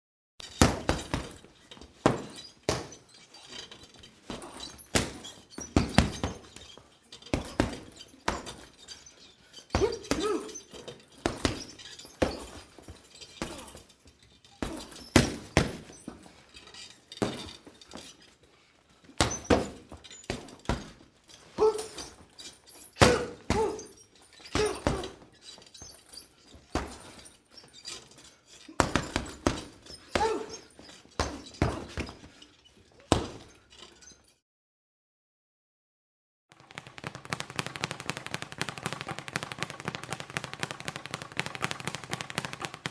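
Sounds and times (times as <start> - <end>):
punches thudding on punching bag: 0.6 - 1.4, 2.0 - 3.0, 4.3 - 6.5, 7.4 - 8.8, 9.7 - 10.6, 11.2 - 13.8, 14.6 - 16.3, 17.2 - 17.6, 19.2 - 21.0, 23.0 - 25.3, 26.7 - 27.3, 28.8 - 32.3, 33.1 - 33.5
boxer grunting: 9.8 - 10.7, 13.4 - 13.8, 21.6 - 22.1, 23.0 - 24.0, 24.6 - 25.2, 30.1 - 32.0.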